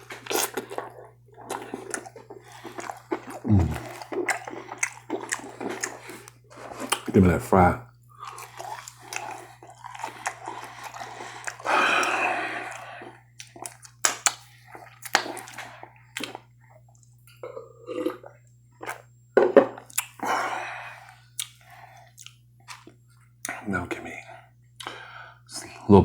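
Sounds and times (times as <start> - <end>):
chewing with mouth clicks: 0.0 - 7.2, 8.0 - 19.1, 19.7 - 20.2, 21.0 - 24.2, 24.8 - 25.8
lip smacks: 0.0 - 7.2, 8.2 - 17.4, 19.8 - 20.2, 21.4 - 23.6
breathy noisy sounds: 2.5 - 4.1, 10.4 - 13.2.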